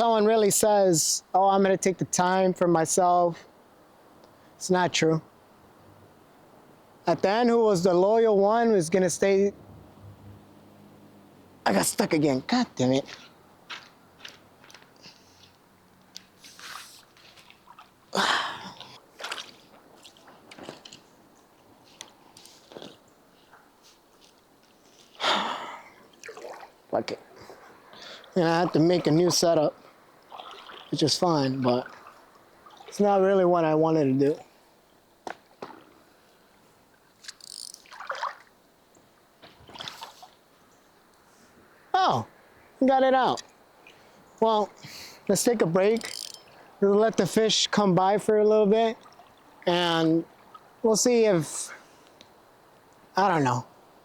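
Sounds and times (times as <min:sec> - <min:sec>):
water trickles and splashes: 0:07.1 - 0:33.5, 0:34.1 - 0:41.8, 0:43.4 - 0:51.3
rustles and scuffs of fishing gear: 0:13.0 - 0:18.2, 0:18.8 - 0:25.2, 0:35.4 - 0:38.4.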